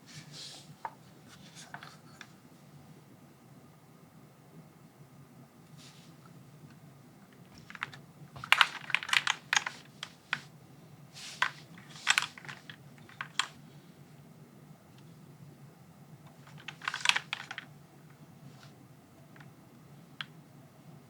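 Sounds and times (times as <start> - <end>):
mechanical keyboard typing: 7.6 - 10.5, 11.4 - 13.6, 16.3 - 17.7.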